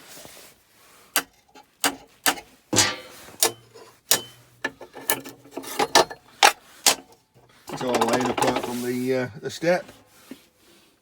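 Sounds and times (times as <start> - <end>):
hammer tapping on metal: 1.2 - 4.9.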